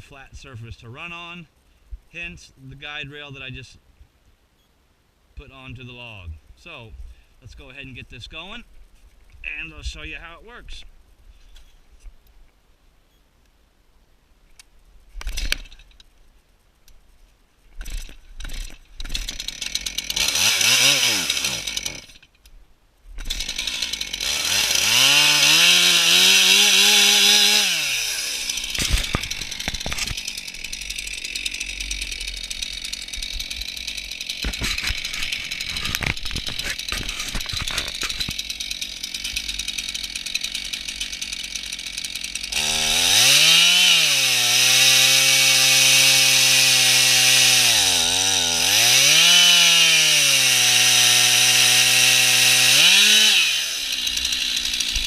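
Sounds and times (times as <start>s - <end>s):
chainsaw revving and idling: 17.8s - 22.3s, 23.2s - 55.0s.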